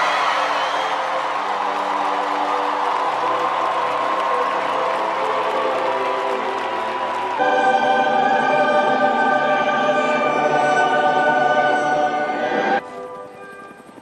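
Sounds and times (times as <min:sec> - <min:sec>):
choir singing with accompaniment: 0:02.7 - 0:12.8.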